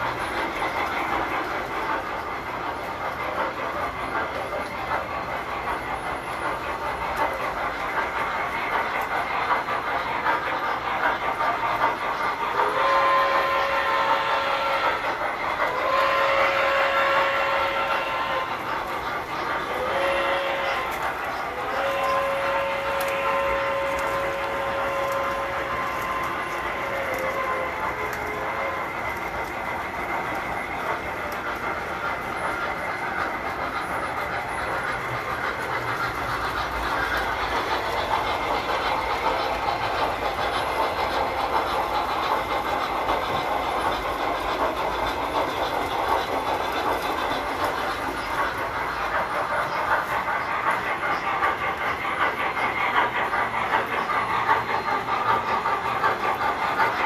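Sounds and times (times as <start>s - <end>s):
toy trains rolling on metal track: 0.0s - 57.0s.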